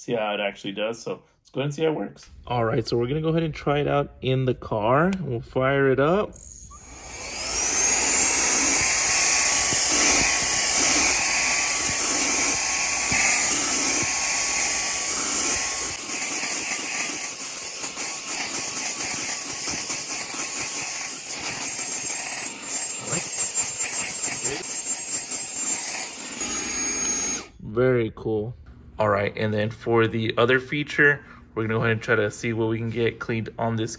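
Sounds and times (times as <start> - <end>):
handheld vacuum whining: 6.4 - 27.6.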